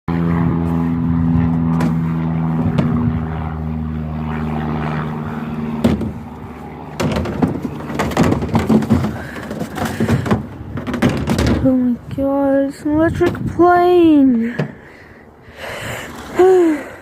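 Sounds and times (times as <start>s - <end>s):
propeller aircraft drone: 0.1s - 17.0s
rustling and knocks: 5.8s - 6.3s, 6.9s - 11.7s.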